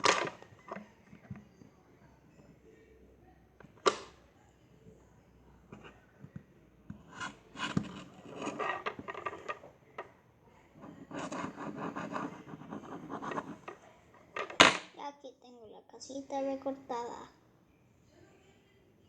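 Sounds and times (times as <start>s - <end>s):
tool scraping dough: 7.0s - 9.6s, 10.8s - 13.8s.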